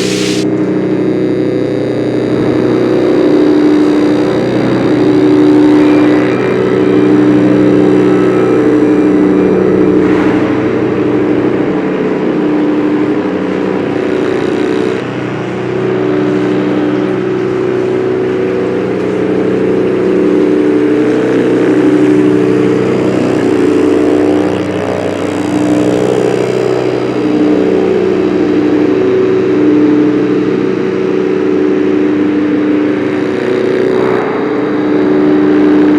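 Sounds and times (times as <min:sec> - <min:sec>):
noisy hiss: 0:00.0 - 0:00.4
drone synthesizer tones: 0:00.0 - 0:35.9.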